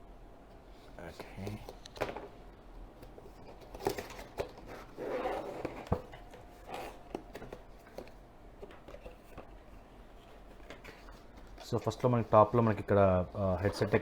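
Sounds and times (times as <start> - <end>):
cardboard and plastic packaging rustling: 3.1 - 14.0.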